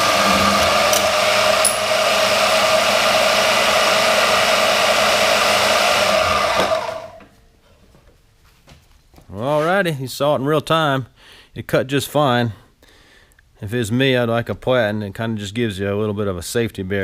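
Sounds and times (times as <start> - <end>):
band saw cutting: 0.0 - 7.2.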